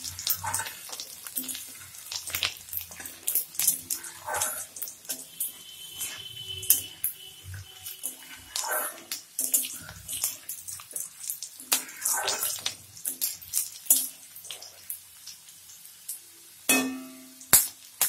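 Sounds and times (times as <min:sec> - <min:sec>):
garlic sizzling in hot oil: 0:00.0 - 0:18.0
metal utensil knocking pan: 0:16.7 - 0:17.4.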